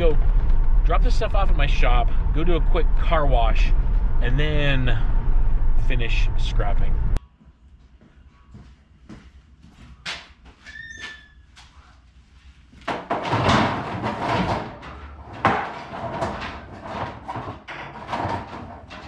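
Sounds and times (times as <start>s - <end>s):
short squeak: 10.7s - 11.5s
rustling and clattering: 12.3s - 19.0s.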